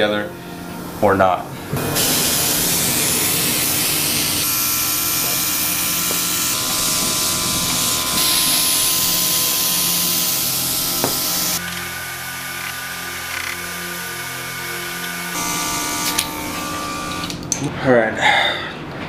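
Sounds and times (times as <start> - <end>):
paint sprayer hissing: 1.8 - 12.0.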